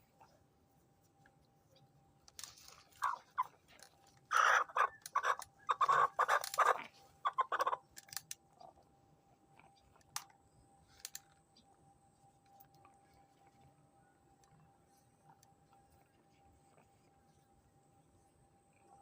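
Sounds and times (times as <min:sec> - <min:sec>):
chickens clucking: 0:03.0 - 0:07.9.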